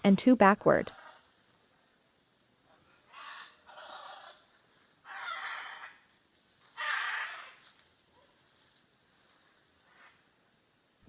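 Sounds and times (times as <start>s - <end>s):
macaws squawking: 5.1s - 5.9s, 6.8s - 7.6s.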